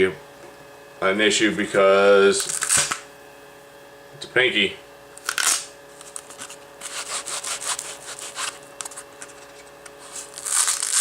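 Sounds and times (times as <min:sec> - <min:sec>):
fabric rubbing and scratching: 0:06.3 - 0:11.0.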